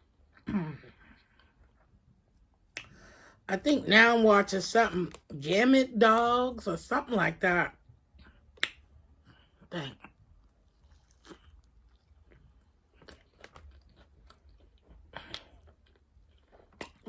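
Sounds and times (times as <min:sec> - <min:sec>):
person chewing: 0:08.1 - 0:17.0.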